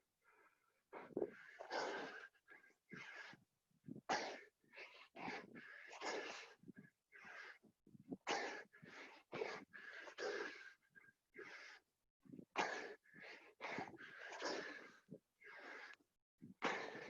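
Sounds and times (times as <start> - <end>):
people panting hard: 4.8 - 16.0.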